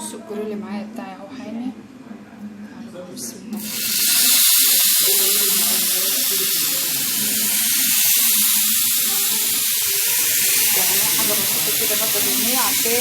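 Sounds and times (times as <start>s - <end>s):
kebab skewers sizzling on grill: 3.6s - 13.0s.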